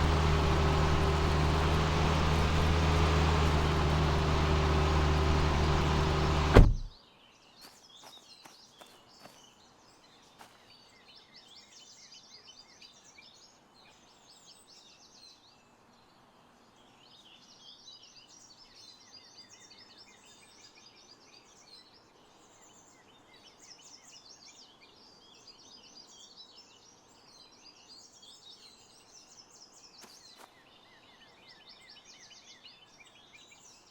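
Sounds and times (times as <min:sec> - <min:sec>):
engine cutting off with a thunk: 0:00.0 - 0:06.9
engine running: 0:00.0 - 0:06.9
small birds chirping: 0:00.0 - 0:06.9.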